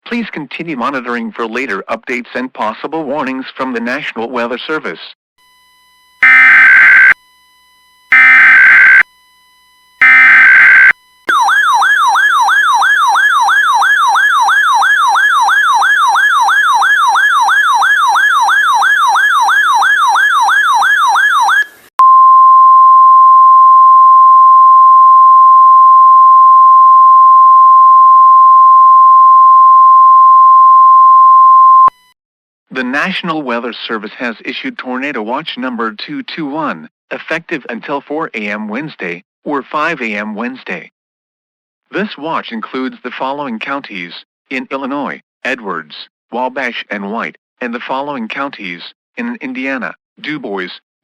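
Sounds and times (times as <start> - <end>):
data bursts: 6.2 - 7.2, 8.1 - 9.0, 10.0 - 11.4
electronic siren warbling: 6.2 - 7.2, 8.1 - 9.0, 10.0 - 21.8
steady alert tone: 6.2 - 7.2, 8.1 - 9.0, 10.0 - 11.6.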